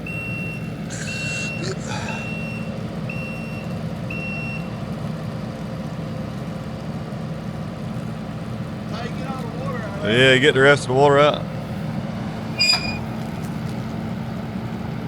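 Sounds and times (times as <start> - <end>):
vehicle backup alarm beeping: 0.0 - 5.4, 12.2 - 13.4
engine running: 0.0 - 15.0.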